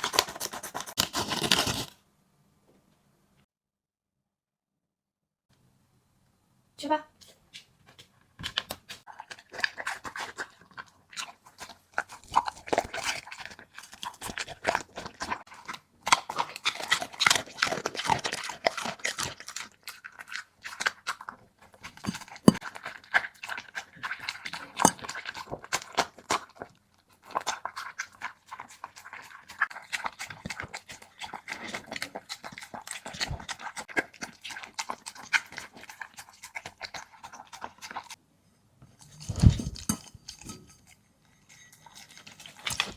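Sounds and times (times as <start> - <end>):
dog crunching food: 7.5 - 38.2, 41.9 - 42.9.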